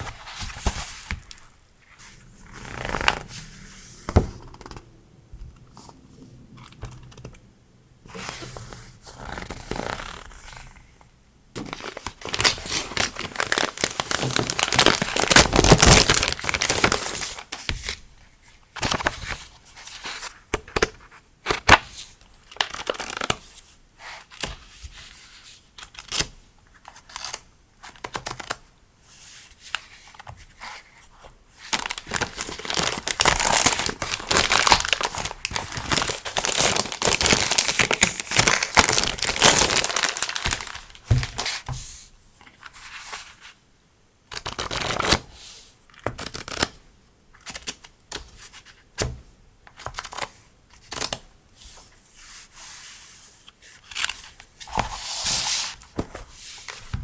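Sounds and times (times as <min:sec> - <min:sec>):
packaging crinkling and tearing: 0:11.6 - 0:17.5, 0:31.7 - 0:41.5.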